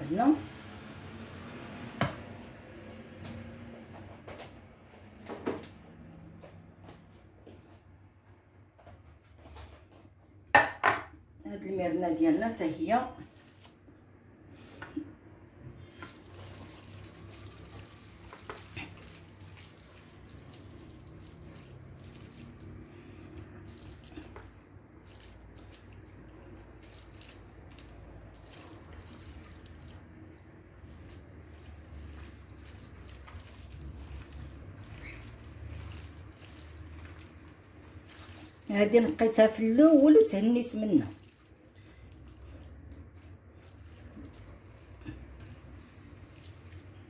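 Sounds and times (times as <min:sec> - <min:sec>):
water sloshing and trickling: 0:13.2 - 0:14.2, 0:15.8 - 0:47.0
wet handling noises: 0:13.2 - 0:14.8, 0:15.8 - 0:47.0.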